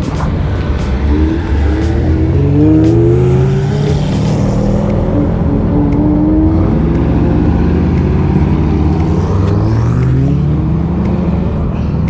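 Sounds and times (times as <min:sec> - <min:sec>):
vehicle engines passing: 0:00.0 - 0:12.0.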